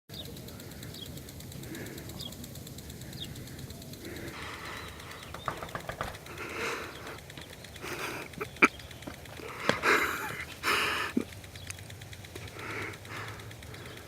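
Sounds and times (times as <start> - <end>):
sharp clicks: 0.1 - 14.0.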